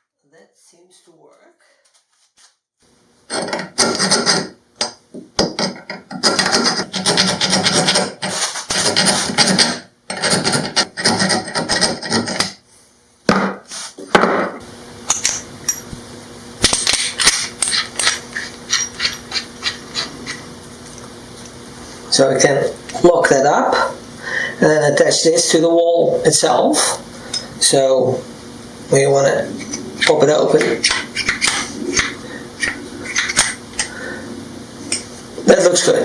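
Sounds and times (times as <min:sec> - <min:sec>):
file rasping on metal: 0:03.3 - 0:04.5, 0:05.4 - 0:12.6, 0:17.3 - 0:20.5, 0:30.6 - 0:33.9.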